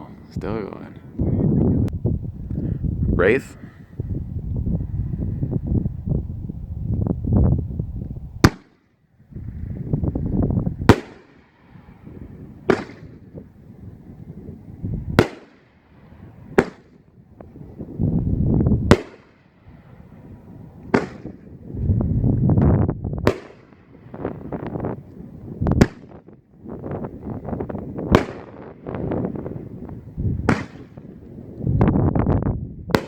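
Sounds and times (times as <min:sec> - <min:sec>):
low rumbling: 0:00.0 - 0:08.4
firework booms: 0:08.3 - 0:08.8, 0:09.4 - 0:33.0.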